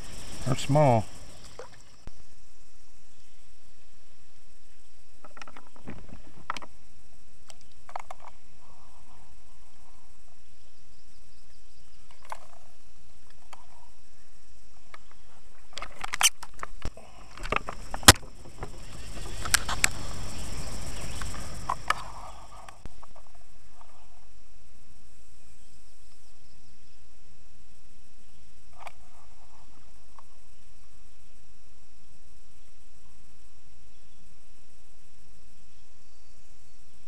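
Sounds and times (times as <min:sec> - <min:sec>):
microphone handling noise: 0:14.9 - 0:24.1.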